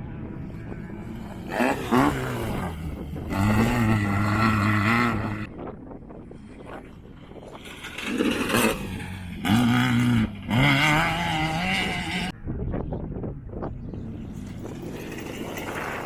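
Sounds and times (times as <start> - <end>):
rough noise: 0.0 - 5.5, 6.4 - 12.3
race vehicle engine revving: 0.6 - 5.5, 7.7 - 12.3.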